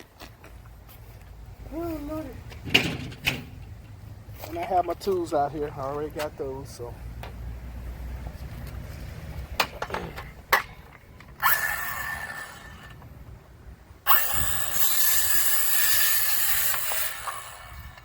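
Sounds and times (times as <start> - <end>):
battery-powered saw cutting trim: 11.4 - 13.0, 14.1 - 18.0.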